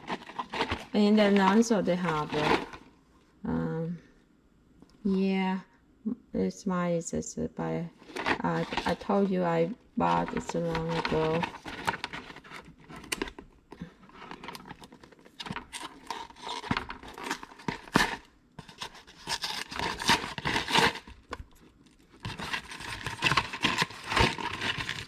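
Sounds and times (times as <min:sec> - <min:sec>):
cardboard carton tearing: 0:00.0 - 0:02.8, 0:14.3 - 0:21.4, 0:22.2 - 0:25.0
packaging crinkling: 0:00.0 - 0:02.9, 0:08.0 - 0:09.3, 0:10.0 - 0:25.0.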